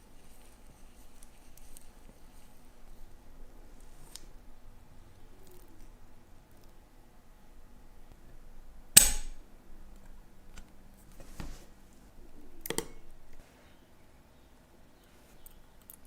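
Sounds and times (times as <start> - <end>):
loud sharp snap: 9.0 - 9.4.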